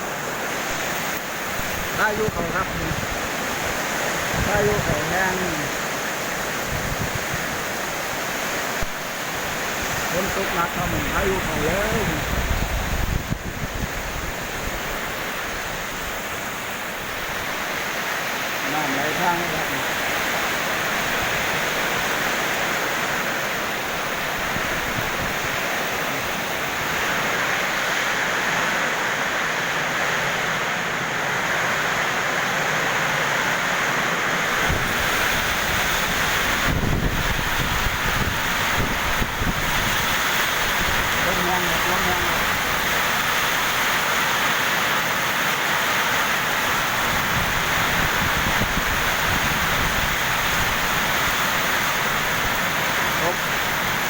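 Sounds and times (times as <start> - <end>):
heavy rain pouring: 0.0 - 54.0
wind buffeting microphone: 1.4 - 5.4, 6.2 - 17.6, 19.9 - 27.8, 34.5 - 43.4, 46.7 - 52.8.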